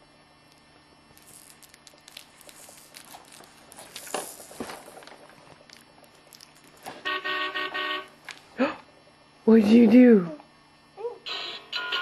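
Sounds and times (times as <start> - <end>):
rustling and crinkling: 1.2 - 7.0.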